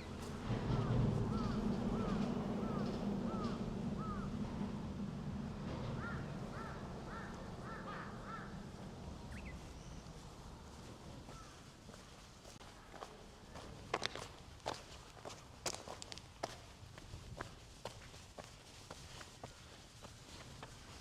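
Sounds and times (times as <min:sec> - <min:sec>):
low steady hum: 0:00.0 - 0:12.4
crow cawing: 0:00.8 - 0:04.4, 0:05.9 - 0:08.8, 0:11.3 - 0:11.6.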